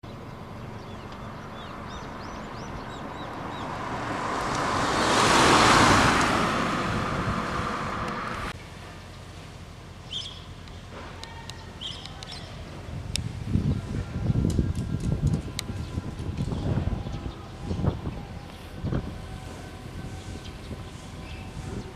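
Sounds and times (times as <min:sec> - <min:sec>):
bird chirping: 0:00.0 - 0:03.8, 0:10.0 - 0:10.8, 0:11.5 - 0:12.6
vehicle passing by: 0:00.8 - 0:08.6, 0:15.4 - 0:21.9.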